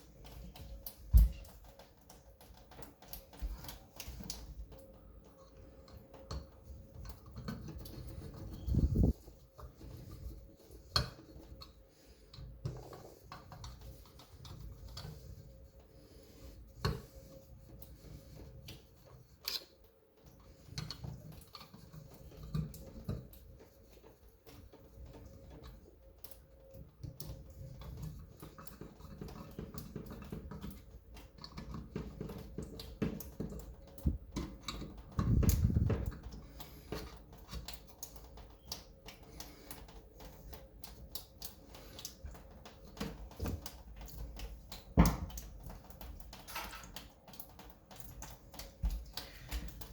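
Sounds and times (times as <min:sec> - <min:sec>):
small clicks taps and scraping: 0:00.0 - 0:49.9.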